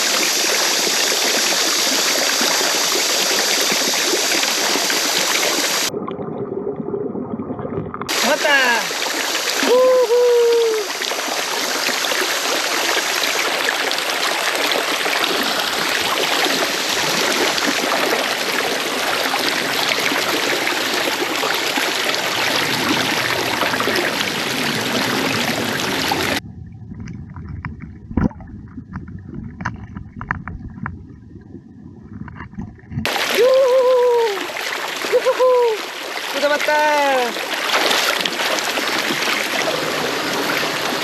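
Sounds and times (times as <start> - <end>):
stream water rushing: 0.0 - 5.9, 8.1 - 26.4, 33.1 - 41.0.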